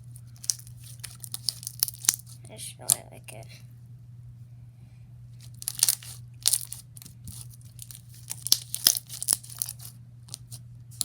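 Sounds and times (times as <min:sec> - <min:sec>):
slime crackling and popping: 0:00.4 - 0:02.4, 0:05.5 - 0:11.0.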